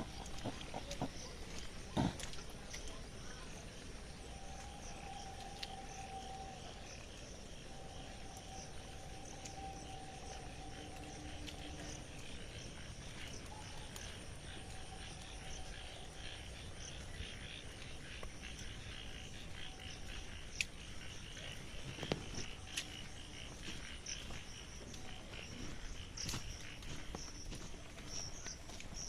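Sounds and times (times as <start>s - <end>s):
frogs and insects calling: 0.0s - 29.0s.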